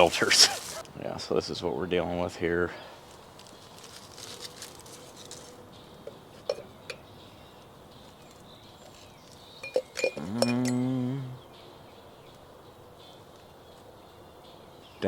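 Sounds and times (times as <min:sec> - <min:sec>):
faint outdoor ambience: 0:00.0 - 0:15.0.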